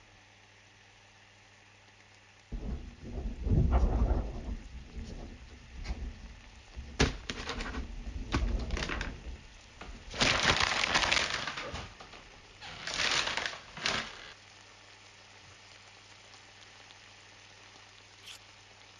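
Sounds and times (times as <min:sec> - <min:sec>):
crunching bursts: 0:06.6 - 0:14.4
sharp cracks and clicks: 0:10.1 - 0:14.4.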